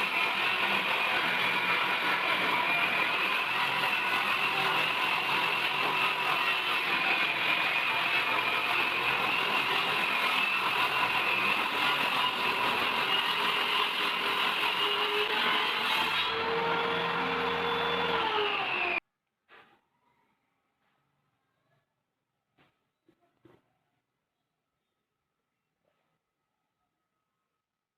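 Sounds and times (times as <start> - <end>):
power tool motor whine: 16.0 - 19.0.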